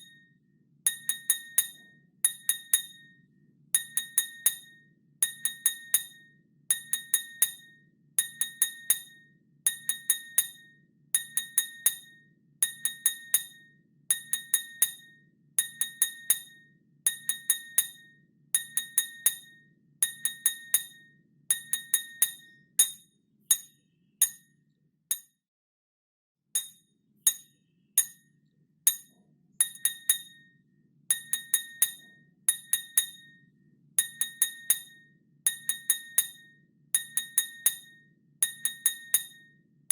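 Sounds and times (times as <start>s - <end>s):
metal spoon tapping a glass: 0.9s - 3.1s, 3.8s - 24.5s, 25.1s - 25.3s, 26.6s - 28.2s, 28.9s - 30.5s, 31.1s - 33.4s, 34.0s - 39.5s.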